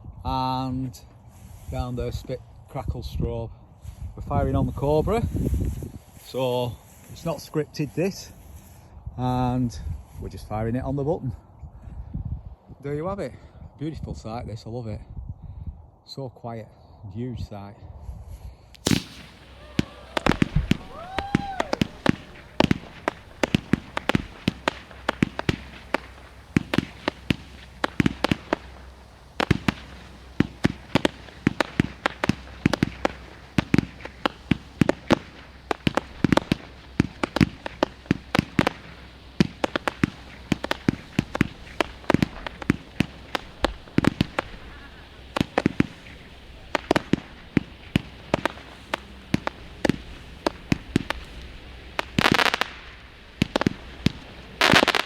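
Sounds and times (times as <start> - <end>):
fireworks popping and crackling: 4.3 - 8.8, 18.7 - 55.0.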